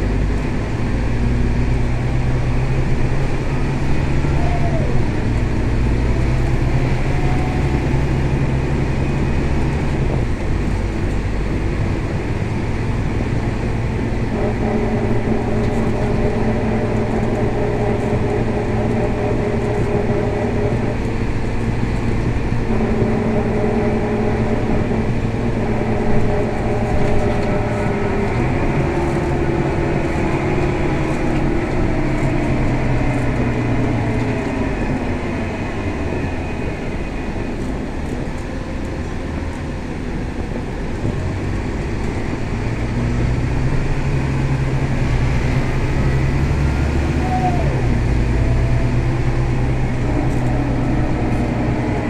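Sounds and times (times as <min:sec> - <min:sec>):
bus engine drone: 0:00.0 - 0:52.0
faint whine: 0:00.0 - 0:52.0.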